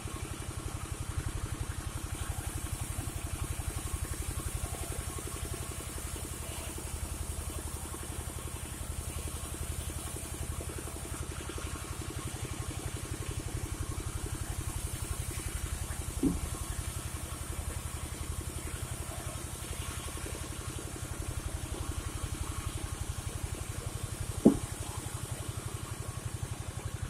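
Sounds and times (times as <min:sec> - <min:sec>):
short knock: 0:16.2 - 0:16.5, 0:24.4 - 0:24.7.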